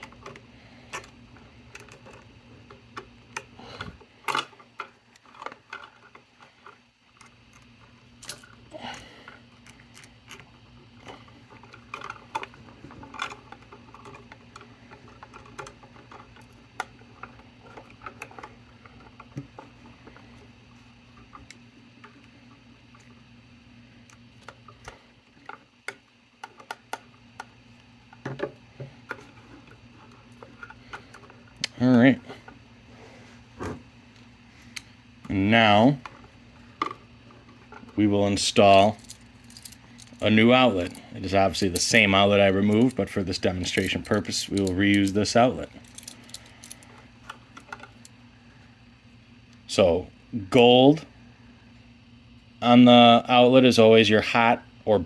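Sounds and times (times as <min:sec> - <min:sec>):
hardware clattering: 0:36.0 - 0:48.0.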